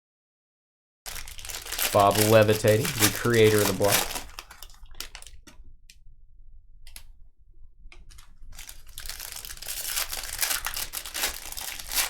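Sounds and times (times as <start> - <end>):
card wrapper crinkling and tearing: 1.1 - 5.4, 8.1 - 12.0.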